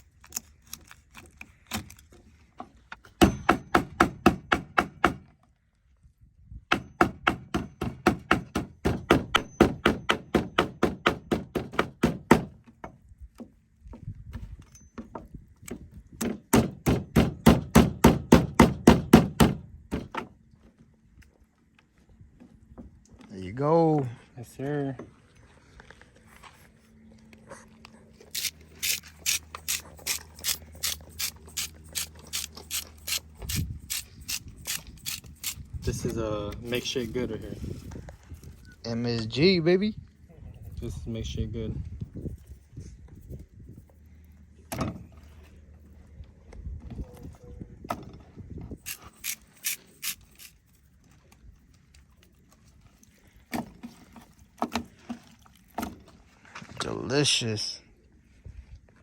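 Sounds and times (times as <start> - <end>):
grinder ratcheting: 28.3 - 35.7, 48.8 - 50.6.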